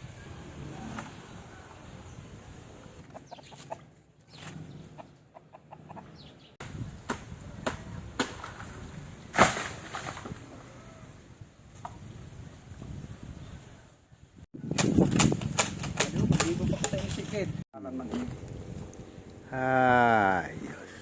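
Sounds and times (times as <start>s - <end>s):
chickens clucking: 3.0s - 6.5s.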